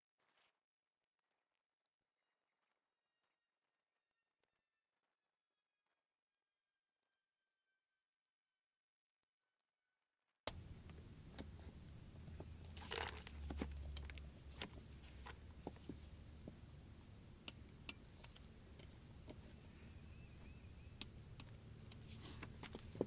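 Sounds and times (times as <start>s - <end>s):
light clicks and taps of parts: 10.5s - 23.0s
low steady hum: 10.5s - 23.0s.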